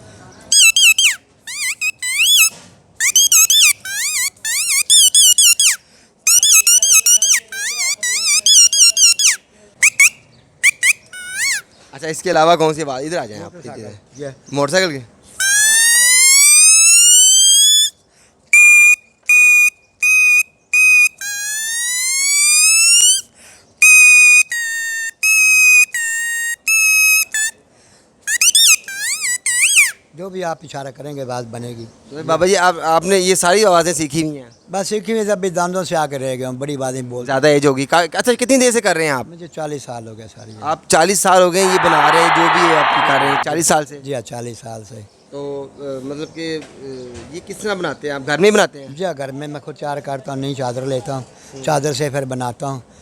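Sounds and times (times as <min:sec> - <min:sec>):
whistle imitating bird calls: 0:00.5 - 0:11.7, 0:15.4 - 0:27.6, 0:28.3 - 0:30.0, 0:41.4 - 0:43.5.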